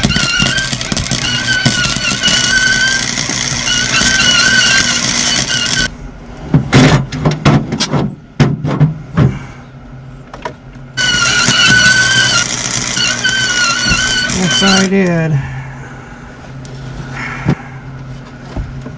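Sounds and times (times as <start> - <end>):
sputtering pops: 0.0 - 5.9, 11.0 - 14.9
welder arc hissing: 0.0 - 5.9, 11.0 - 15.3
low hum: 0.0 - 18.9.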